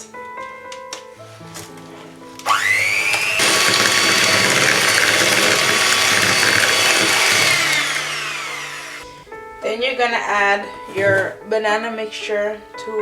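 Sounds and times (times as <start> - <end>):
electric mixer motor whine: 2.5 - 9.1.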